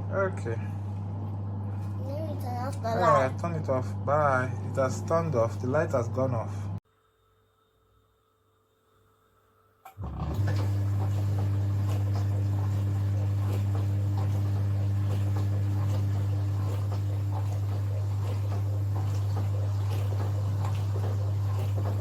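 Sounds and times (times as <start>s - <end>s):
dishwasher pump motor hum: 0.0s - 6.8s, 9.9s - 22.0s
water spraying inside dishwasher: 10.0s - 22.0s.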